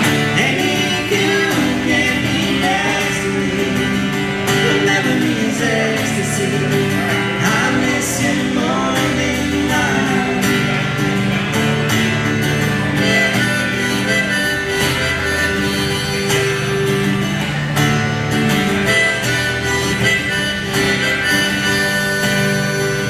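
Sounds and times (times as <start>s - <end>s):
person singing: 0.0s - 11.4s
acoustic guitar: 0.0s - 23.0s.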